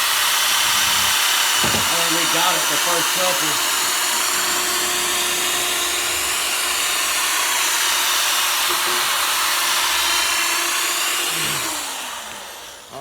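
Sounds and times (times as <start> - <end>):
sanding pad whirring hiss: 1.6 - 6.8.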